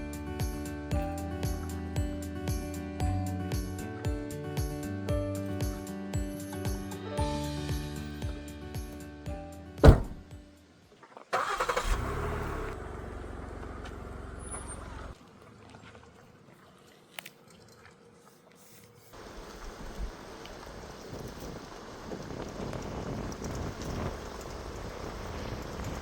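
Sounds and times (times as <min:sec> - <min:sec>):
car engine starting and running: 0:09.8 - 0:10.3, 0:11.4 - 0:15.2
sharp thump: 0:09.8 - 0:10.3.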